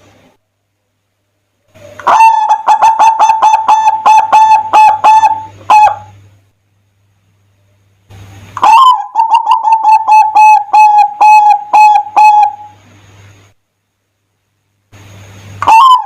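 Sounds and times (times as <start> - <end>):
dove cooing: 1.7 - 6.2, 8.6 - 12.8, 15.6 - 16.0.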